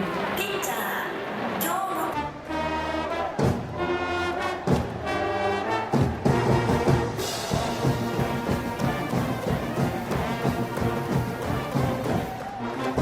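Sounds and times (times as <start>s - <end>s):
sustained brass notes: 2.1s - 13.0s
drum beat: 3.4s - 3.8s, 4.6s - 5.1s, 5.8s - 13.0s.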